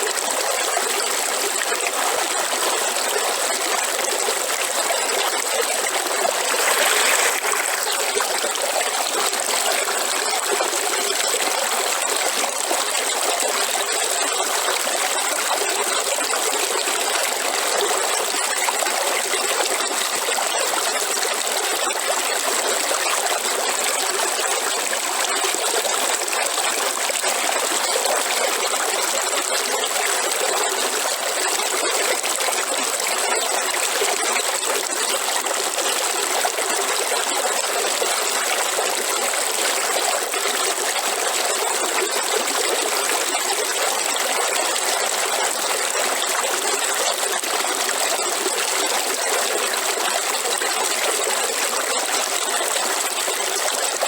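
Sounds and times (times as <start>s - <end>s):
river water rushing over rocks: 6.0s - 8.6s.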